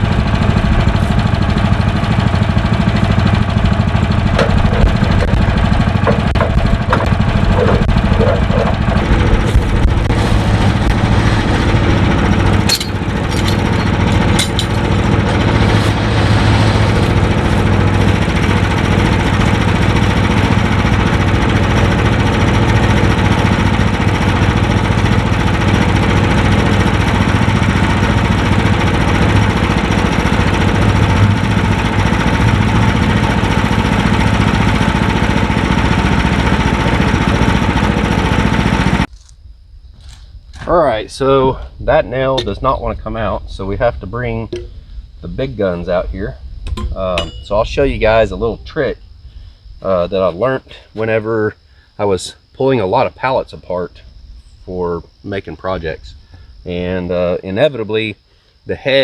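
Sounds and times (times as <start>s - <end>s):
sawmill engine running: 0.0s - 39.1s.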